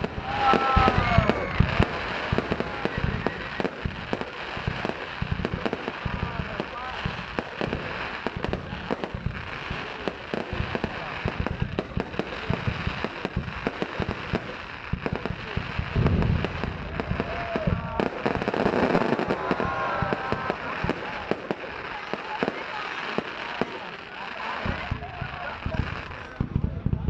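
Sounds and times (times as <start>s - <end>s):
fireworks bangs and crackling: 0.0s - 27.0s
heavy firework booms: 0.0s - 27.0s
people's voices: 0.0s - 27.0s.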